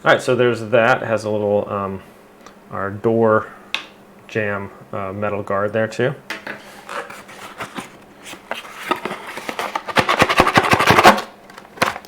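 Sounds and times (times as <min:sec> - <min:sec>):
packaging rattling and scraping: 0:06.6 - 0:12.0.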